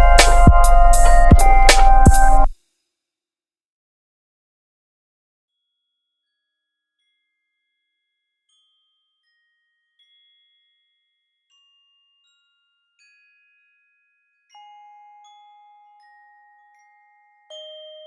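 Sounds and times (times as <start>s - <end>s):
soft bell-like chimes: 0.0s - 2.5s, 6.2s - 18.0s.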